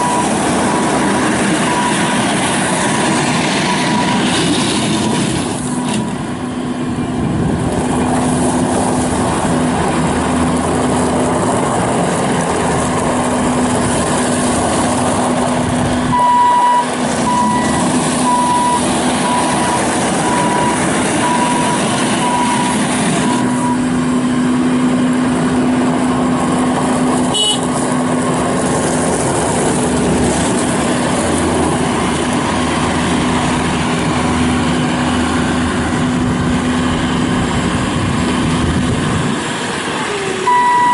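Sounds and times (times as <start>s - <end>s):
high back-up alarm beeping: 0.0s - 1.0s, 1.6s - 2.3s, 16.1s - 24.0s, 40.4s - 40.9s
diesel engine running: 0.0s - 40.9s.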